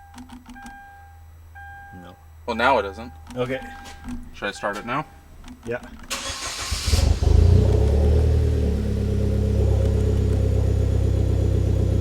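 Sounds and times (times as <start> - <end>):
car engine starting and idling: 5.2 - 12.0.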